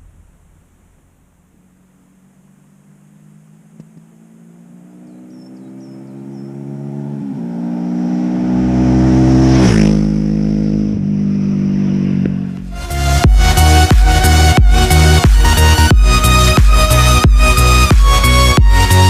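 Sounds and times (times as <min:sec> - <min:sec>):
motorcycle accelerating past: 0:01.6 - 0:12.7.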